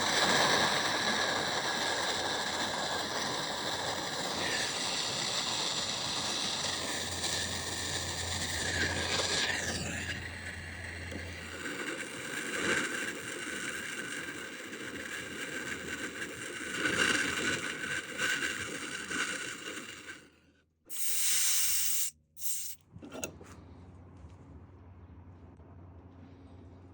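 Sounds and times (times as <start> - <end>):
gas torch hissing: 0.0 - 20.3, 20.9 - 23.3
short loud hiss: 20.9 - 22.8.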